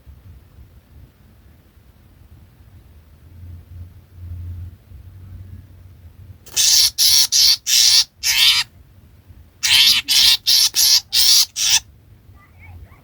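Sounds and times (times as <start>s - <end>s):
bird harsh grating calls: 6.5s - 8.7s, 9.6s - 11.8s.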